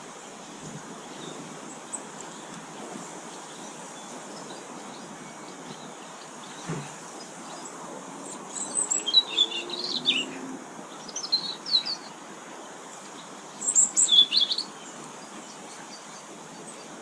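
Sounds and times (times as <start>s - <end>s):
outdoor background noise: 0.0s - 17.0s
birds twittering: 0.6s - 17.0s.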